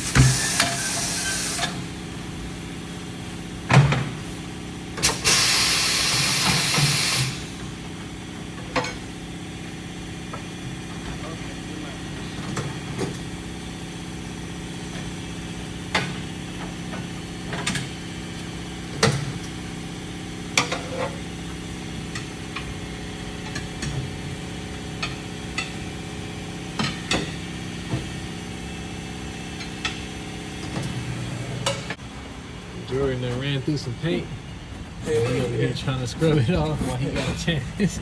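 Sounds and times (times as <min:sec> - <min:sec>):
machinery humming: 0:19.5 - 0:38.0.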